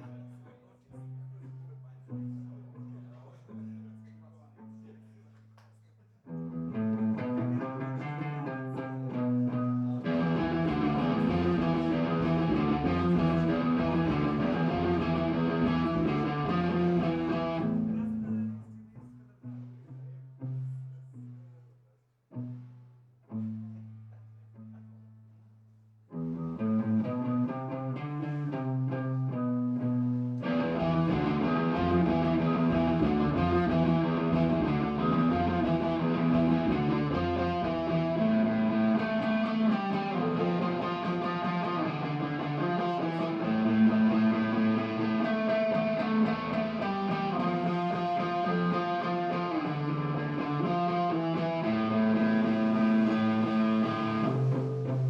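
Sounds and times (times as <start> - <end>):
electric guitar: 6.3 - 20.6, 26.1 - 55.0
low bass notes: 9.5 - 18.6, 26.2 - 49.3, 51.2 - 55.0
punk rock band playing: 10.0 - 17.7, 30.4 - 49.8.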